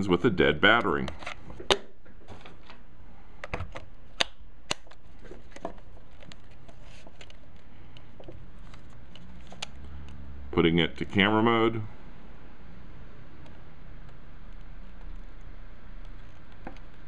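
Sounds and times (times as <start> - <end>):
steady low hiss: 0.0 - 17.0.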